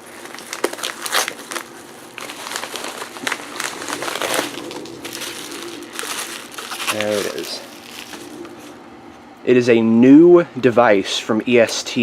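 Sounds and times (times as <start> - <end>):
packaging crinkling: 0.0 - 8.8.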